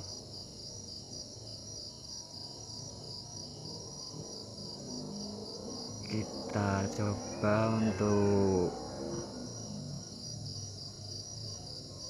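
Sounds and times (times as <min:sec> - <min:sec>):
crickets chirping: 0:00.0 - 0:12.0.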